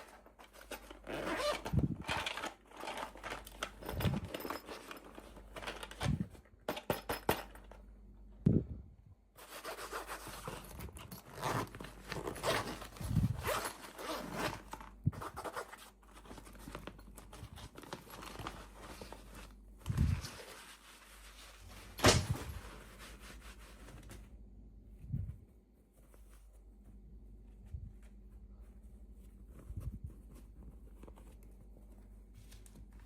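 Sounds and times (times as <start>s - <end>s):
packaging crackling and rustling: 10.8s - 20.7s.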